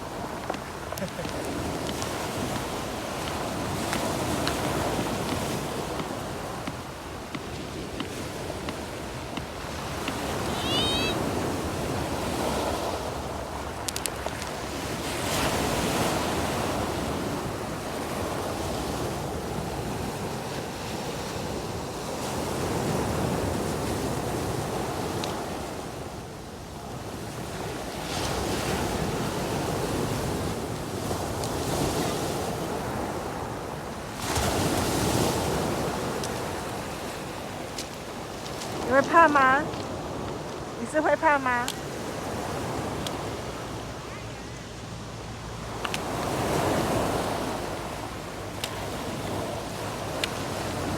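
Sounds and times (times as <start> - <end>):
wind on microphone: 0.0 - 26.1
ocean surf breaking: 0.0 - 26.2, 26.8 - 50.9.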